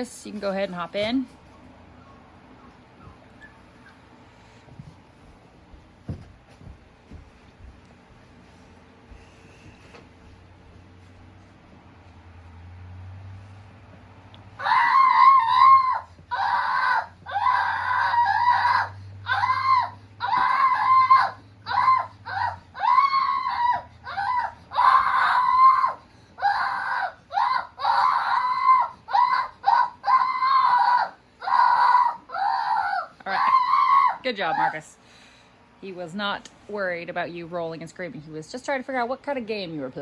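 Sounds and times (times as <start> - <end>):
person screaming: 14.6 - 34.8.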